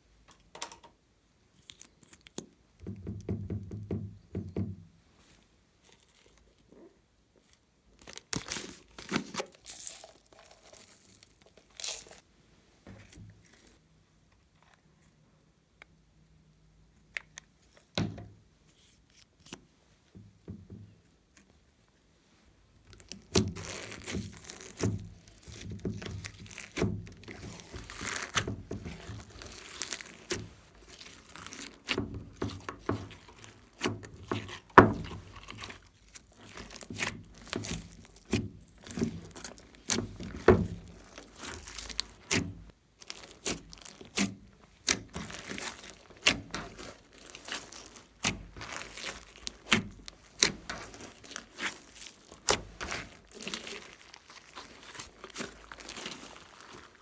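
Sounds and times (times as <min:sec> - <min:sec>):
slime crackling and popping: 0:08.0 - 0:12.2, 0:22.9 - 0:57.0.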